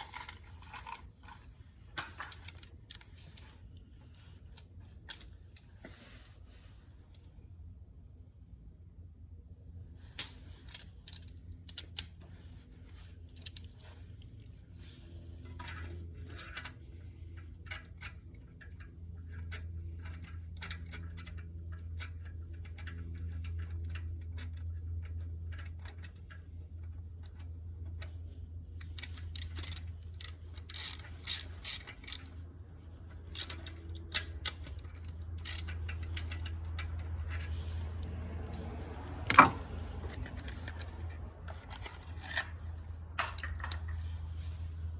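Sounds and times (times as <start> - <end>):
metal clinks: 10.2 - 12.1
ratchet wrench clicking: 28.9 - 32.2, 33.3 - 39.4.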